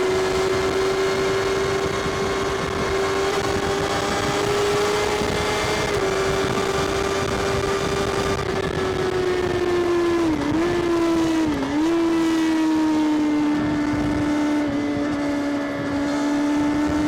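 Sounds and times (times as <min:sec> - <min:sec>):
motorcycle engine cruising: 0:00.0 - 0:17.0.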